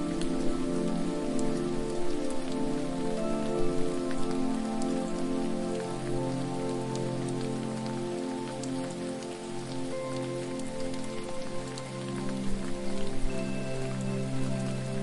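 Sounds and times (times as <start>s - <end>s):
ambient music low tones: 0.0s - 15.0s
falling water patter and splash: 0.0s - 15.0s.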